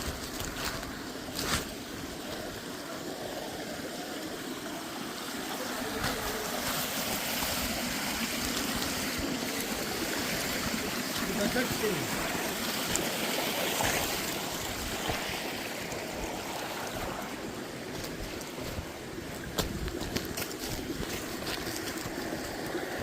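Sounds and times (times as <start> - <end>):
running water: 0.0 - 23.0.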